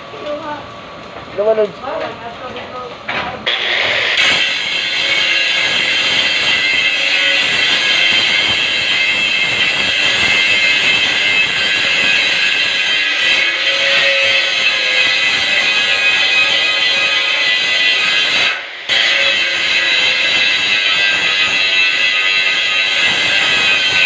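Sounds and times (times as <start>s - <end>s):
angle grinder grinding metal: 3.4s - 24.0s.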